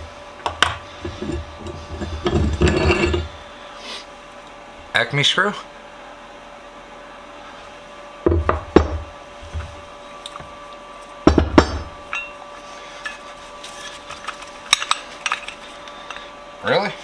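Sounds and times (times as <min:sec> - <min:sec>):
hammer knocks on metal vise: 0:08.3 - 0:09.7, 0:11.3 - 0:12.0.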